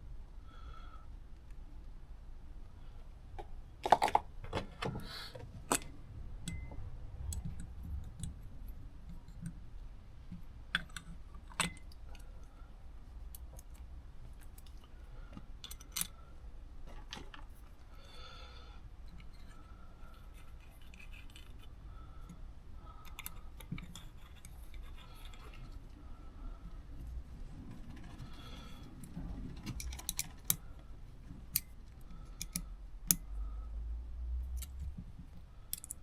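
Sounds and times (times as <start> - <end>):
small metal parts clinking: 35.7 - 36.0.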